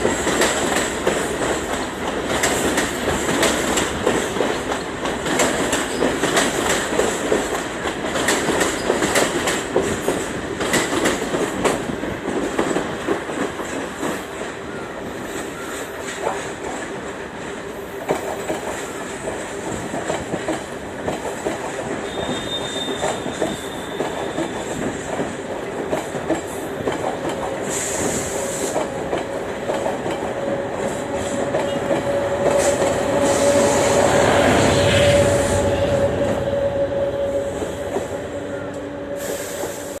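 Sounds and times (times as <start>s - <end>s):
train engine hum: 0.0s - 40.0s
train wheels clicking on rails: 0.0s - 40.0s.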